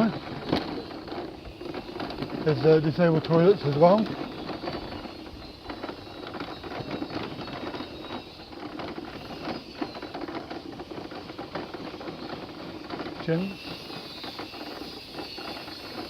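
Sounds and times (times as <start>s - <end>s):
wheelchair rattling over uneven ground: 0.0s - 16.0s.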